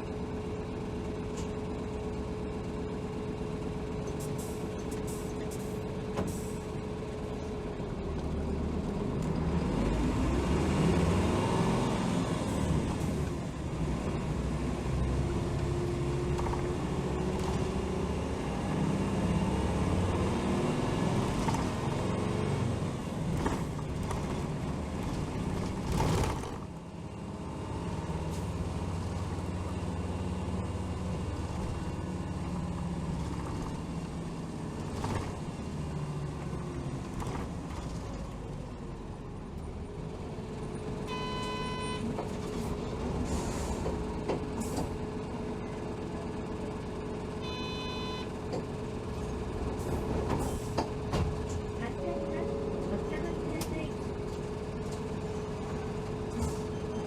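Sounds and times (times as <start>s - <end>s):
bus diesel engine running: 0.0s - 57.0s
short electronic beeps: 41.1s - 42.1s, 47.4s - 48.3s.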